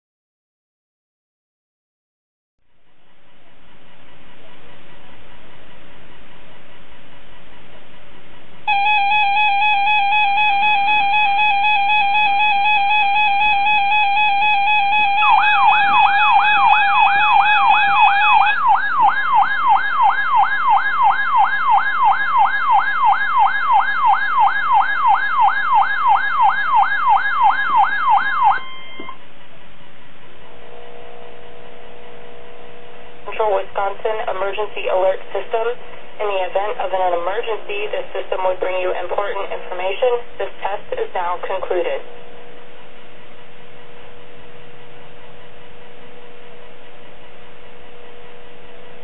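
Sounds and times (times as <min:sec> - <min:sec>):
electronic alarm tone: 0:08.7 - 0:29.2
siren-like warble: 0:08.7 - 0:29.2.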